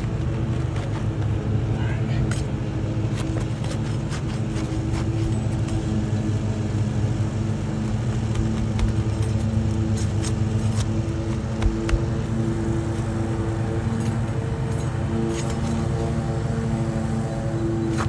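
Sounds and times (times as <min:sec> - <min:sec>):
low motor drone: 0:00.0 - 0:18.0
dull thumps: 0:07.9 - 0:09.4, 0:10.3 - 0:12.2.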